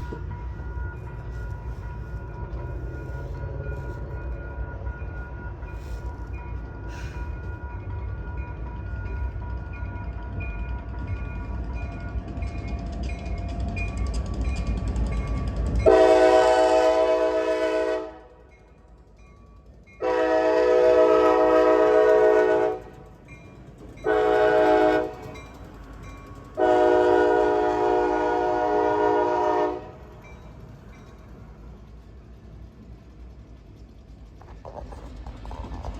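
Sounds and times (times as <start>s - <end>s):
train rumble: 0.0s - 35.9s
locomotive air horn blasts: 15.8s - 18.4s, 20.0s - 22.9s, 24.1s - 25.4s, 26.6s - 30.1s.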